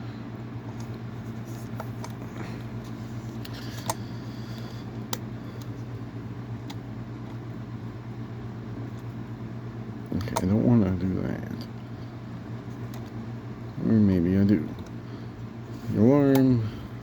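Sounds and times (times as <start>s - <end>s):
low electrical hum: 0.0s - 17.0s
clock knobs clicking: 16.2s - 16.6s.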